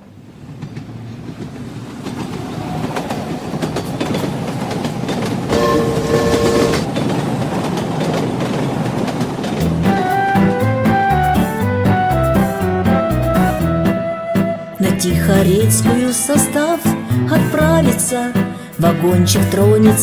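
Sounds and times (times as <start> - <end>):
train wheels clattering on rails: 0.0 - 11.5
train horn: 5.5 - 7.0.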